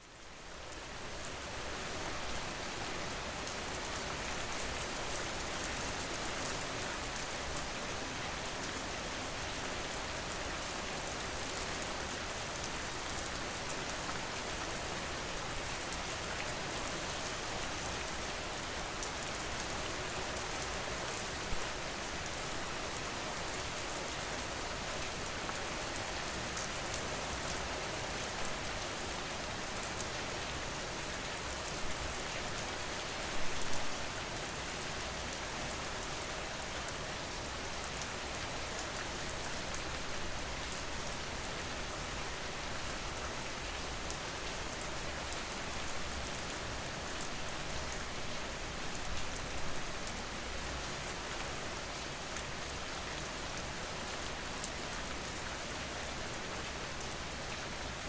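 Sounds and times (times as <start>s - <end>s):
rain patter on a surface: 0.0s - 58.0s.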